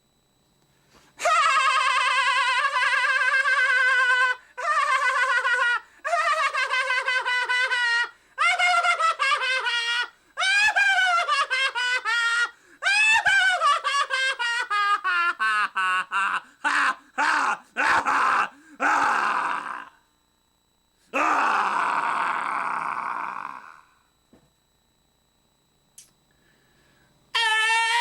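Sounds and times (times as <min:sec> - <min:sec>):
harsh raspy screams: 0:16.1 - 0:20.0, 0:21.1 - 0:23.9, 0:27.3 - 0:28.0.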